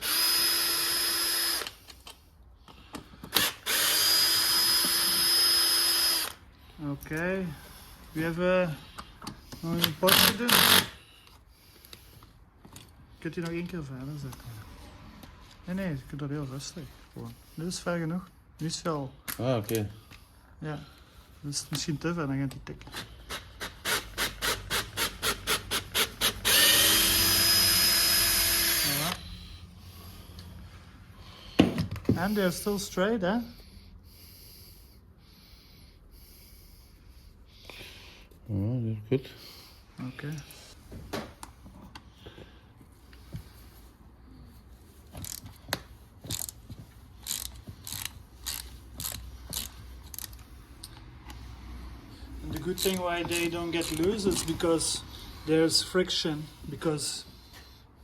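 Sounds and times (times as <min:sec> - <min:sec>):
drill motor running: 0:00.0 - 0:01.8, 0:03.3 - 0:06.4, 0:10.1 - 0:11.0, 0:23.8 - 0:29.2
drill clutch clicking: 0:00.0 - 0:02.2, 0:03.0 - 0:06.4, 0:09.8 - 0:11.0, 0:23.6 - 0:29.2, 0:47.2 - 0:51.4, 0:52.5 - 0:54.6.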